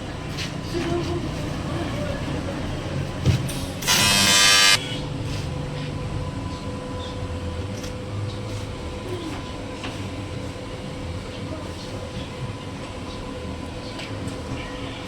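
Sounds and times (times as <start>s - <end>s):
loud buzz: 3.8s - 4.8s.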